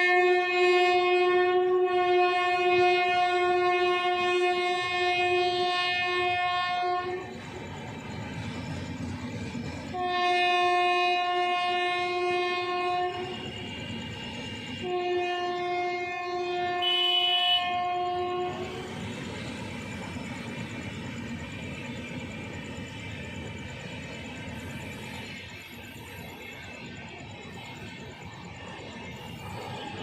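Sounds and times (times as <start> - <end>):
locomotive horn blasts: 0.0 - 7.3, 10.0 - 13.8, 14.5 - 18.9
train rumbling on track: 0.0 - 30.0.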